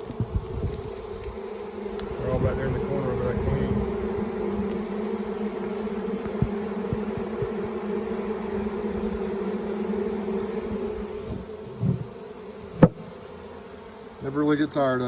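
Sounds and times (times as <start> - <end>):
soft low thumps: 0.0 - 0.8, 6.2 - 7.8, 11.2 - 12.2
bee swarm buzzing: 0.0 - 15.0.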